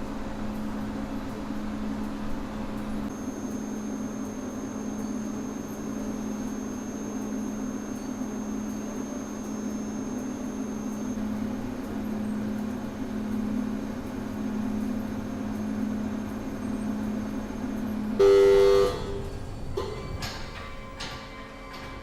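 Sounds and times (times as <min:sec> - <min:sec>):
low mechanical hum: 0:00.0 - 0:22.0
train horn blast: 0:18.2 - 0:19.9.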